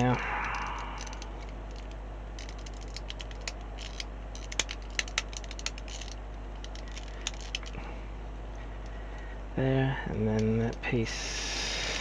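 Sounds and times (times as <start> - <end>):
plastic parts clicking: 0.0 - 7.8
steady low hum: 0.0 - 12.0.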